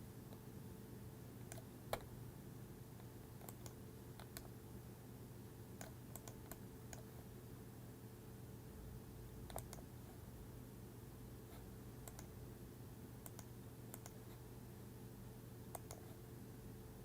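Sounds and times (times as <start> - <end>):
low steady hum: 0.0 - 17.0
mouse and keyboard clicks: 3.4 - 4.5, 5.8 - 7.1, 9.5 - 9.8, 12.0 - 12.3, 13.2 - 14.2, 15.7 - 16.1.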